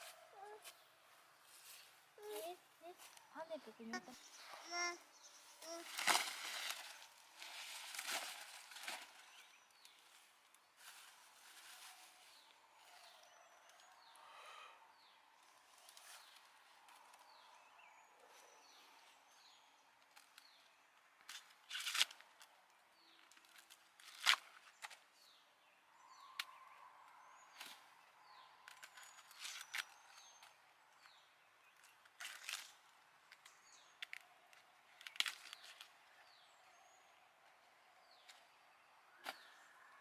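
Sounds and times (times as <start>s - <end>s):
birds chirping: 0.0s - 10.8s
crackling snaps and rustles: 5.6s - 13.1s, 20.0s - 25.3s, 26.4s - 36.4s.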